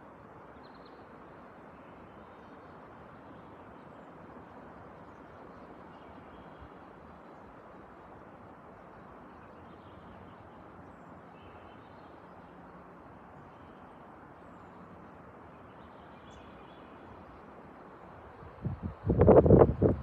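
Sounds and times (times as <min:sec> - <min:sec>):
low background hum and hiss: 0:00.0 - 0:20.0
faint birds chirping: 0:00.4 - 0:19.3.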